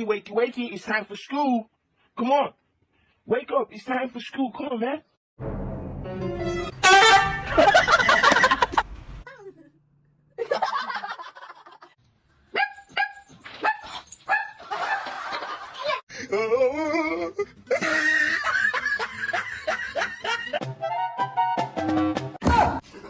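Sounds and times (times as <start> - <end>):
people laughing: 7.4 - 9.6, 10.4 - 12.0, 14.6 - 16.1, 17.7 - 20.6
dog barking and crying: 12.5 - 14.6.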